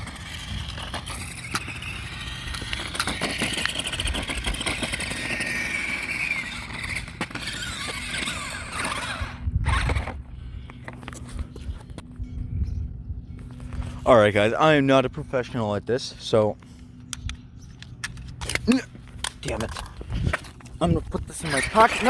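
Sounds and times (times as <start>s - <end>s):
electric motor whining: 0.0s - 10.9s, 21.3s - 22.0s
tyre noise on road: 0.0s - 12.1s.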